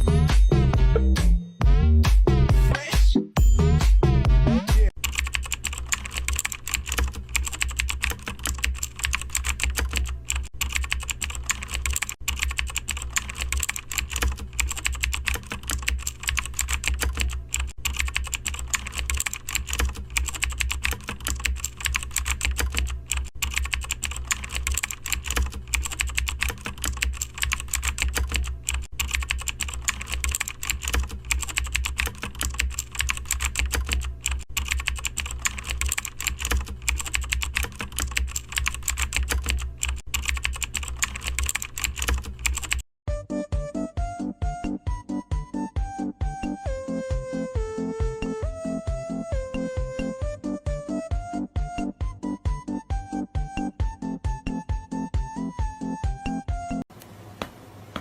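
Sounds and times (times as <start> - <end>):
rapid clicking and tapping: 5.0 - 42.8.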